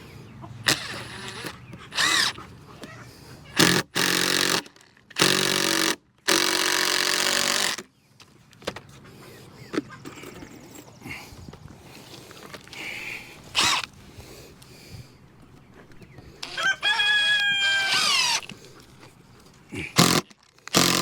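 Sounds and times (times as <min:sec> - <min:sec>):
power drill running: 0:00.7 - 0:02.4, 0:03.6 - 0:04.6, 0:05.2 - 0:07.8, 0:13.6 - 0:13.9, 0:17.7 - 0:18.5, 0:20.0 - 0:21.0.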